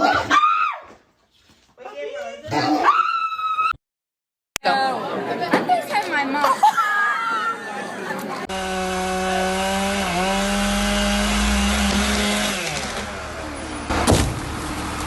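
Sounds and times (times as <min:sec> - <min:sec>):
small engine running: 0:08.5 - 0:13.4.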